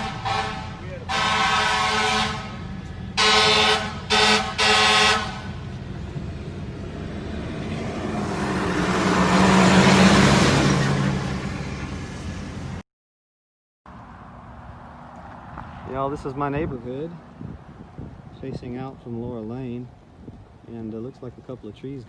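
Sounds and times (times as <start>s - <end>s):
car horn honking: 0.0s - 2.6s, 3.2s - 5.5s
vehicle passing: 0.0s - 12.8s, 13.9s - 19.0s.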